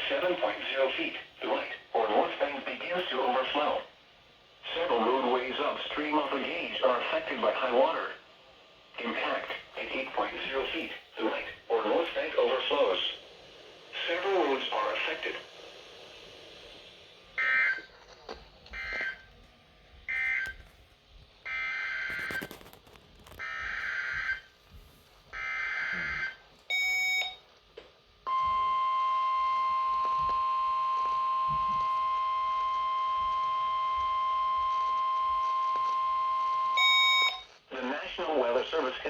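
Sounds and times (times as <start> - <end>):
brief beep: 28.3 - 37.5.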